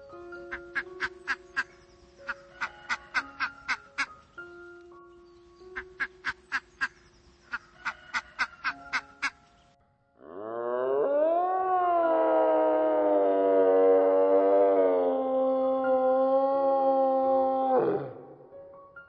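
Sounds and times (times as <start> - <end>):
soft background music: 0.0 - 19.0
duck quacking: 2.3 - 4.1, 5.8 - 9.4.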